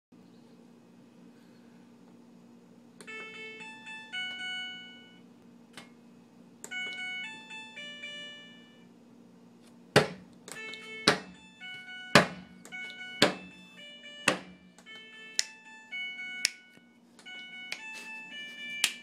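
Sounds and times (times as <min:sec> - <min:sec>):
steady low hum: 0:00.2 - 0:19.0
electronic beeper tune: 0:10.6 - 0:18.9
loud knock: 0:12.2 - 0:12.5.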